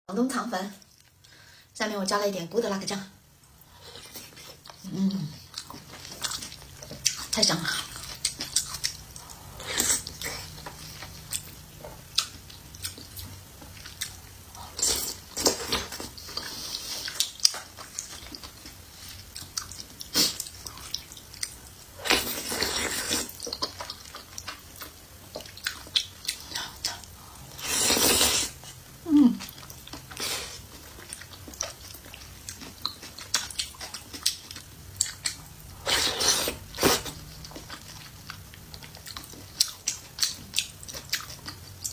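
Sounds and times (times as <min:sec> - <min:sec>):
person chewing noodles: 0:03.6 - 0:41.9.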